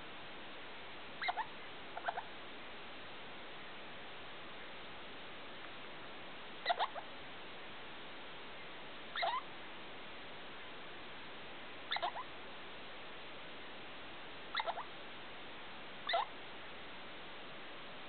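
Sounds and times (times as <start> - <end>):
degu squeaking: 1.2 - 2.3, 6.6 - 7.1, 9.2 - 9.5, 11.9 - 12.3, 14.5 - 14.9, 16.0 - 16.3.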